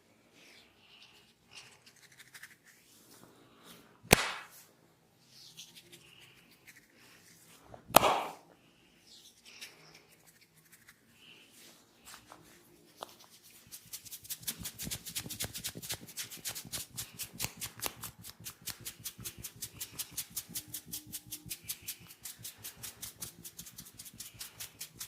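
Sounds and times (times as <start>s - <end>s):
hands rubbing hair: 1.6s - 4.7s, 5.3s - 8.4s, 9.3s - 25.0s
hands slapping head: 4.1s - 4.6s, 7.9s - 8.4s, 17.3s - 19.0s.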